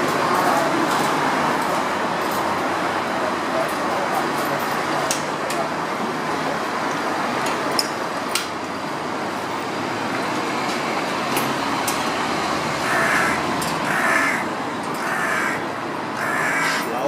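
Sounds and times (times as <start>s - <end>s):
city road traffic: 0.0s - 17.0s
crow cawing: 12.8s - 16.9s.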